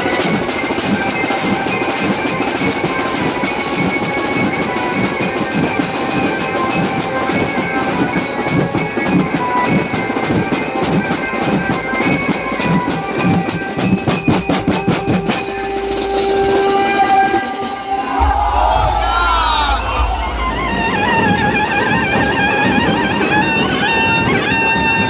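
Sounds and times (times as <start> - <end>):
sustained ringing tones: 0.0 - 22.4
fast loud drumming: 0.0 - 24.6.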